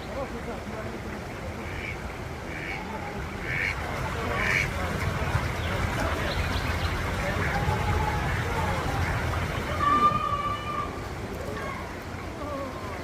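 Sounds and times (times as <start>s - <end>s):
low background noise: 0.0s - 13.0s
ducks quacking: 1.5s - 11.0s.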